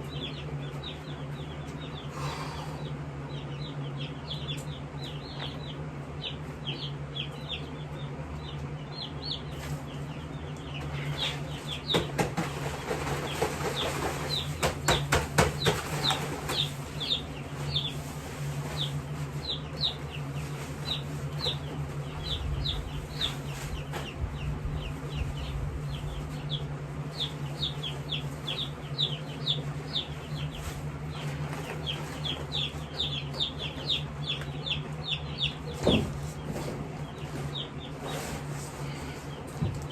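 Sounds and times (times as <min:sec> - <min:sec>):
chicks peeping: 0:00.0 - 0:39.9
steady low hum: 0:00.0 - 0:39.9
rustling and clattering: 0:11.1 - 0:24.4.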